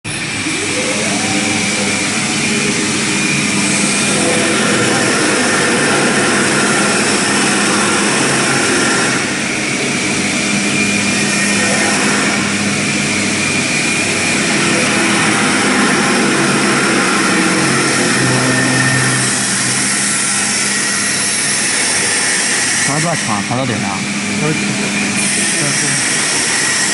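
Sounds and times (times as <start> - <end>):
low hum: 0.1 - 22.8
lathe whirring and hissing: 0.1 - 26.9.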